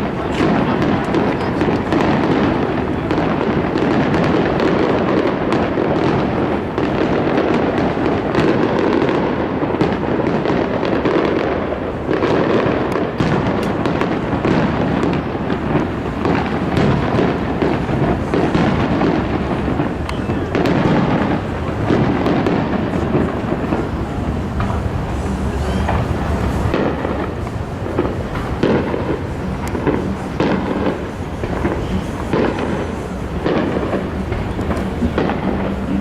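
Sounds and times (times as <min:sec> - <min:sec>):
fireworks booming and crackling: 0:00.0 - 0:36.0.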